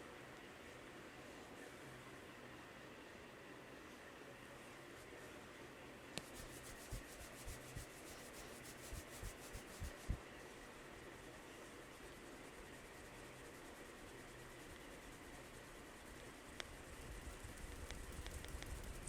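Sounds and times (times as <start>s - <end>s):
hands rubbing hair: 6.2s - 10.2s.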